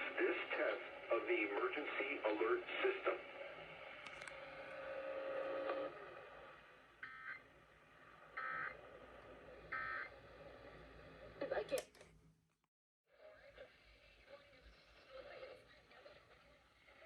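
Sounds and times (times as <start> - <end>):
steady hiss with hum: 0.0 - 11.6.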